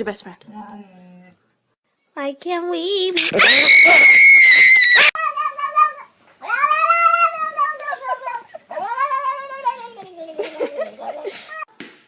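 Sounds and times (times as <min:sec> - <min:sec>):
cat meowing: 0:03.2 - 0:10.0.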